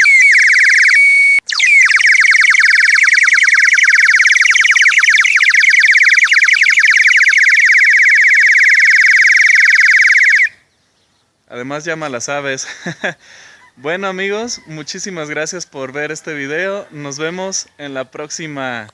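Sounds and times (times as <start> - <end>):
bird whistle warbling trill: 0.0 - 10.6.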